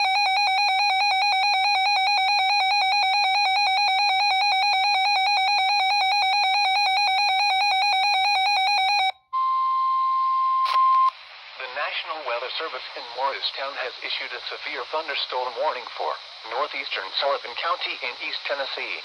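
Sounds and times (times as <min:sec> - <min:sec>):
radio hiss: 0:10.7 - 0:19.0.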